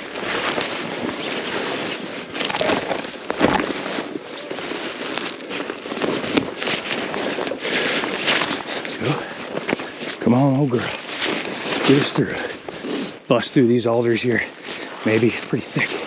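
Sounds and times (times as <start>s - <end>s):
branches snapping and scraping: 0.2s - 10.2s.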